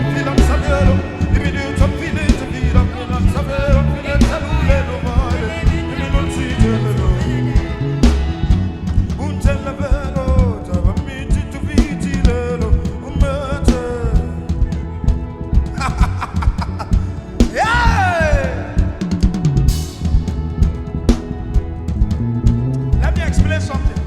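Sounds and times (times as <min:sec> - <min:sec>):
drum hits: 0:00.0 - 0:24.0
gospel music with singing: 0:00.0 - 0:24.0.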